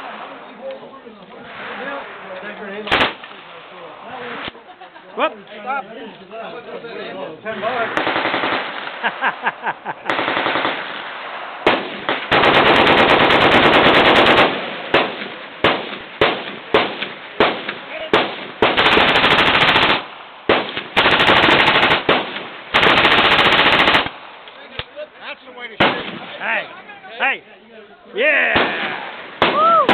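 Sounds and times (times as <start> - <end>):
machine guns firing: 7.7 - 9.0, 10.1 - 24.2.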